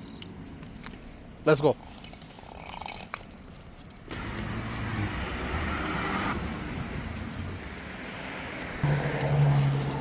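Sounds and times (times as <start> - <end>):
car passing: 4.1 - 10.0.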